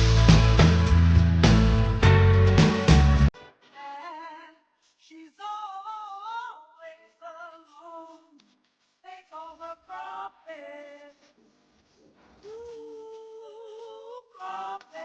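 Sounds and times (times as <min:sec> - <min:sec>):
person singing melodic phrases: 0:12.4 - 0:15.0.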